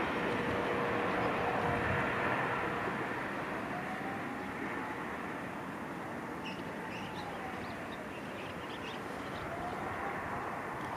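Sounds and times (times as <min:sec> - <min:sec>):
outdoor background noise: 0:00.0 - 0:10.9
small birds chirping: 0:05.9 - 0:10.0.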